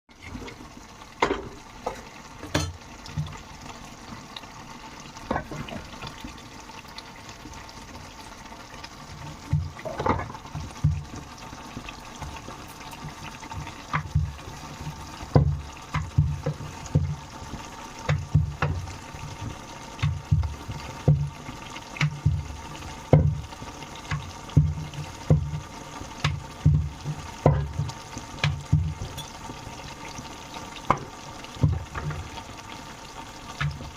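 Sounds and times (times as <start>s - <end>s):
frying and bubbling in a pan: 0.0s - 33.9s.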